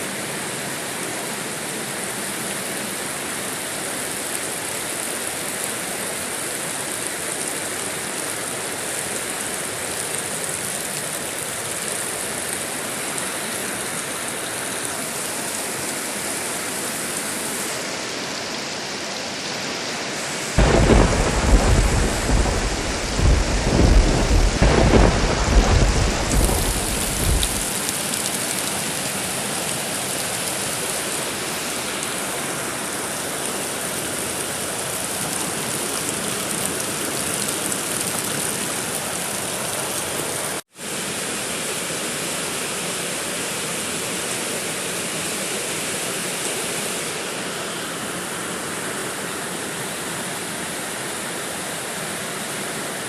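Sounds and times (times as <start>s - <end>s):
rain hissing: 4.3s - 41.0s
thunderclap rumbling: 20.6s - 27.7s.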